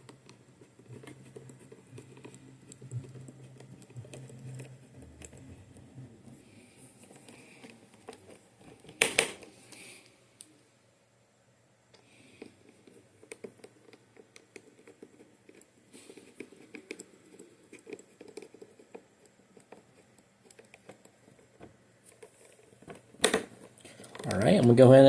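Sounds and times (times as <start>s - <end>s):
faint clicks and taps: 0.0s - 6.4s, 11.9s - 24.8s.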